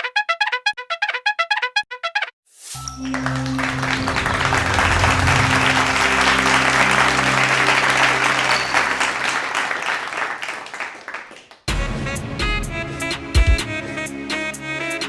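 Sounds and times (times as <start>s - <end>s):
low musical chord: 2.8s - 10.0s
crowd applause: 2.8s - 11.7s.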